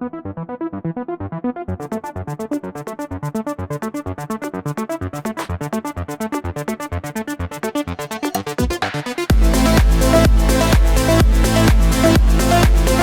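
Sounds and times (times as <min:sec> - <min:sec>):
electronic dance music: 0:07.5 - 0:13.0.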